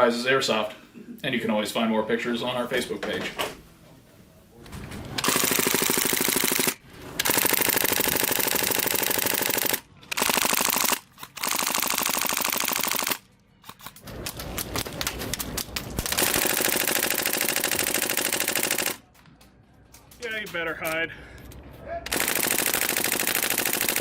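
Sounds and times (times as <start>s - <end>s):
airsoft gun firing full auto: 5.2s - 13.2s, 16.0s - 19.0s, 22.1s - 24.0s.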